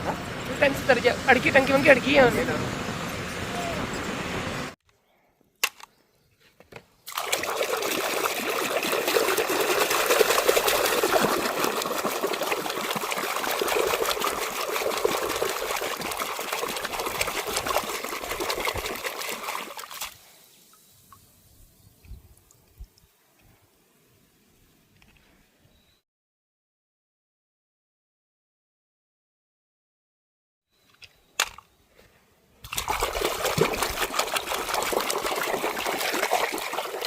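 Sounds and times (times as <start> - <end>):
water running and splashing: 7.1 - 21.2, 32.7 - 37.0.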